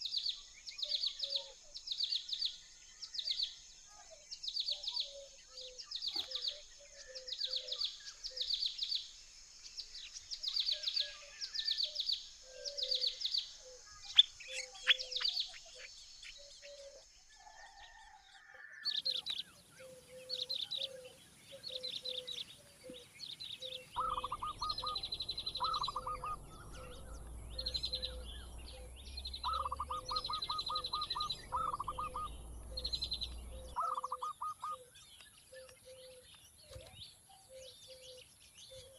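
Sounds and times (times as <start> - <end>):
birds chirping rapidly: 4.4 - 17.0, 18.9 - 38.9
low pulsing bird call: 18.9 - 36.8.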